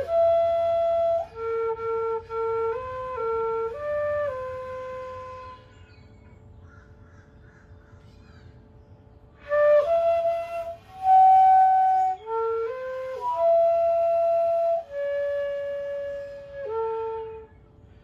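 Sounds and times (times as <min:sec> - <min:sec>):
bamboo flute melody: 0:00.0 - 0:06.2, 0:09.4 - 0:18.0.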